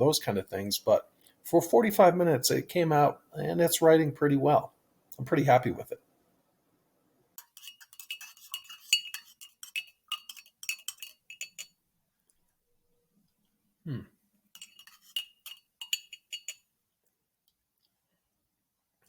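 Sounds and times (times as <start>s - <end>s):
spoon clinking in a cup: 7.4s - 11.8s, 14.6s - 16.7s.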